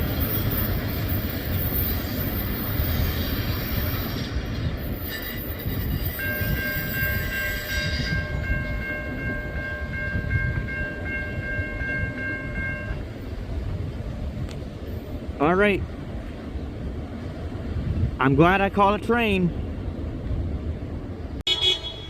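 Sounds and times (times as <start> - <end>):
train rumbling on rails: 0.0 - 22.0
locomotive air horn chord: 21.5 - 22.0.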